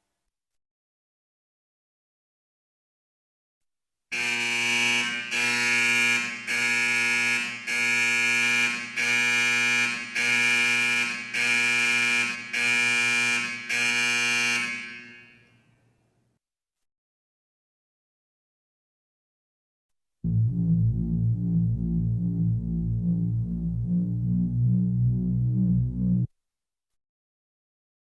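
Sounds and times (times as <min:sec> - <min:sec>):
electric alarm buzzer: 0:04.1 - 0:15.4.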